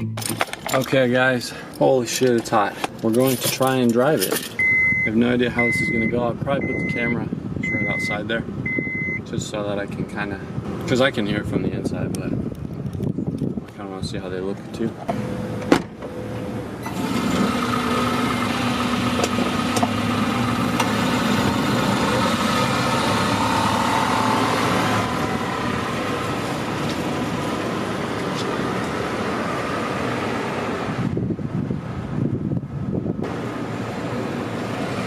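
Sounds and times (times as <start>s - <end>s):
small car engine running: 15.1s - 30.8s.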